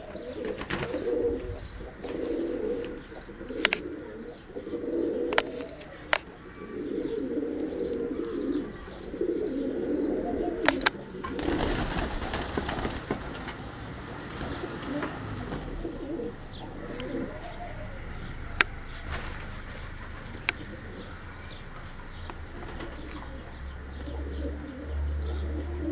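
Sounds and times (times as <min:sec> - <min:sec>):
pigeons cooing: 0:00.0 - 0:25.9
sharp clicks: 0:00.2 - 0:06.7, 0:10.6 - 0:14.4, 0:15.0 - 0:25.6
rough noise: 0:18.5 - 0:20.6.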